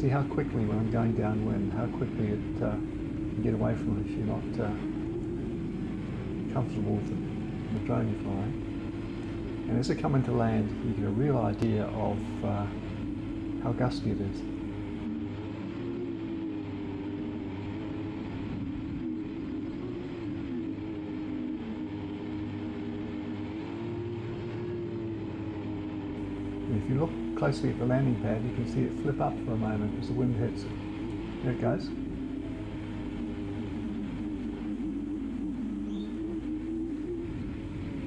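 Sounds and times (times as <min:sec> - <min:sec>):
drone propellers whirring: 0:00.0 - 0:15.1, 0:26.2 - 0:38.0.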